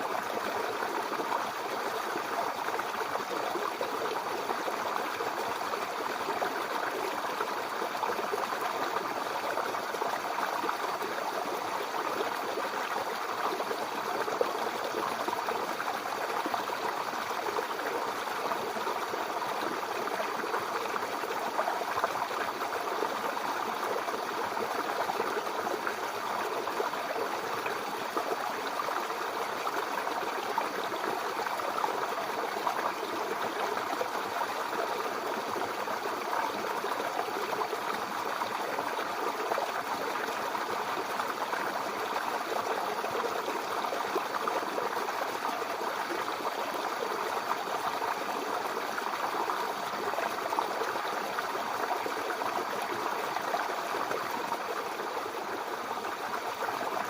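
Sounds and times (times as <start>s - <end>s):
brook water babbling: 0.0s - 57.0s.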